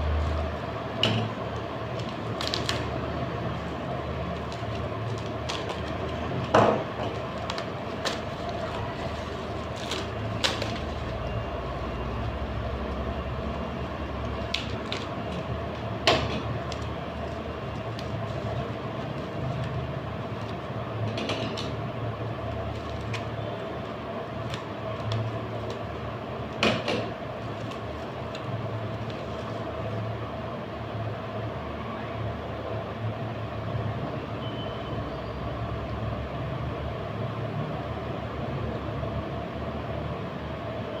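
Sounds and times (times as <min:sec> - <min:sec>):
steady background hum: 0:00.0 - 0:41.0.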